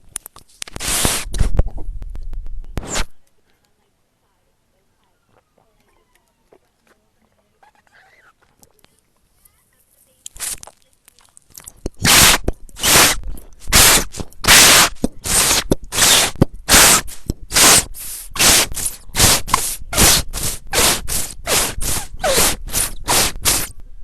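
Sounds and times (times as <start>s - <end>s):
harsh scraping bursts: 12.0s - 23.7s.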